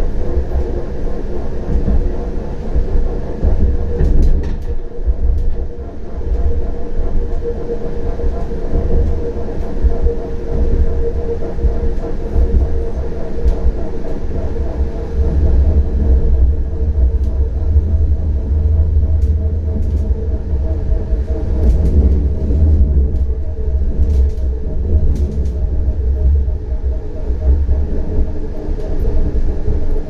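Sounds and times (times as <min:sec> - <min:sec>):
tram rumbling: 0:00.0 - 0:30.0.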